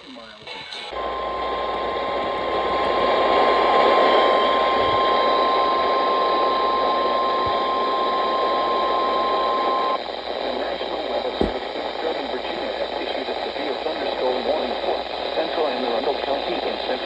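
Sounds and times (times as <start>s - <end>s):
radio static and hiss: 0.0s - 17.0s
steady alarm tone: 0.8s - 10.0s.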